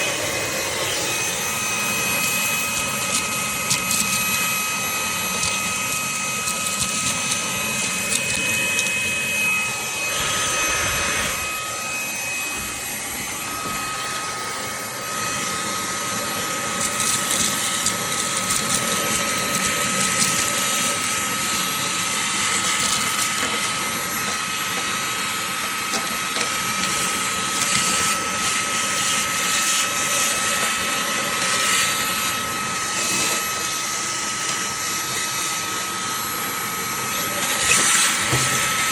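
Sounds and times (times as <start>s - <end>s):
handheld vacuum motor whine: 0.0s - 38.9s
rushing air: 9.7s - 14.3s.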